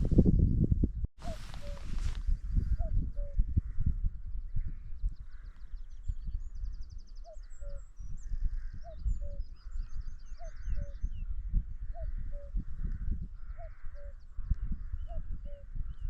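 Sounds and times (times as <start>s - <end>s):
low rumbling thumps on microphone: 0.0s - 5.5s
distant cuckoo calling: 1.2s - 2.1s, 8.6s - 11.2s, 13.4s - 14.3s
songbird twittering: 1.2s - 3.6s, 4.4s - 16.0s.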